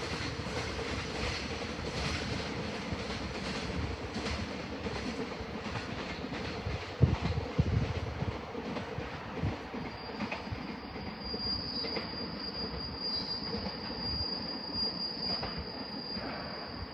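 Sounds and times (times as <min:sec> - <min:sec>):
high wheel squeal: 0:09.8 - 0:16.9.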